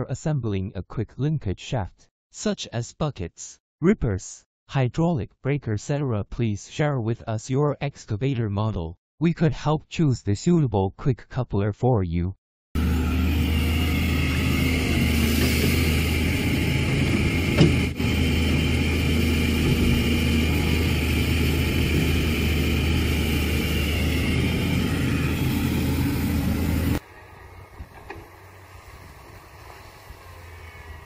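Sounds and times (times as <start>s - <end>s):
excavator engine running: 12.8s - 31.0s.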